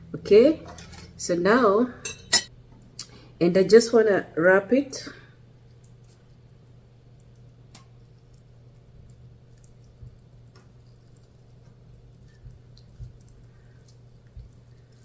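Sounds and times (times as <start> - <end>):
steady low hum: 0.0 - 15.0
soft squishes of raw meat: 5.5 - 15.0.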